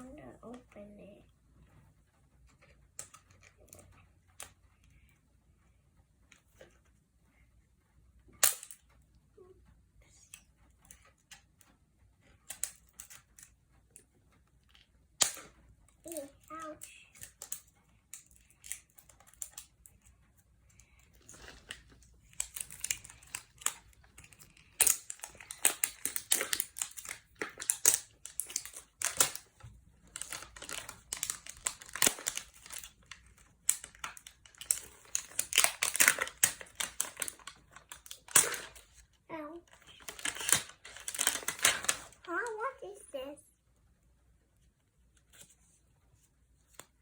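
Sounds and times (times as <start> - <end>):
packaging wrap crinkling and tearing: 21.0 - 39.0, 39.7 - 42.3.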